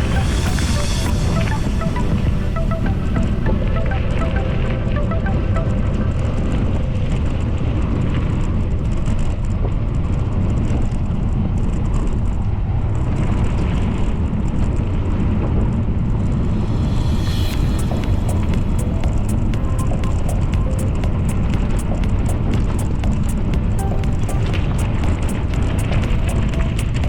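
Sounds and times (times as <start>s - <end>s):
steady low rumble: 15.9s - 27.0s.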